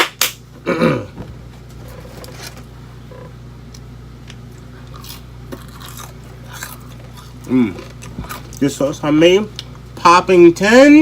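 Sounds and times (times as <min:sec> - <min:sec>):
steady low hum: 0:00.0 - 0:11.0
food crunching: 0:03.6 - 0:08.8
person chewing food: 0:03.7 - 0:08.6.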